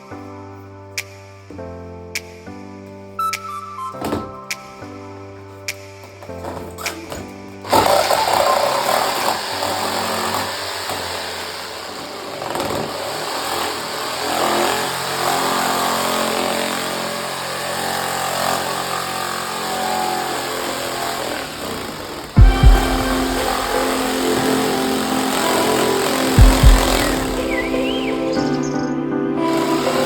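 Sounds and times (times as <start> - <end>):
motor whirring: 7.7 - 15.6, 21.3 - 28.6.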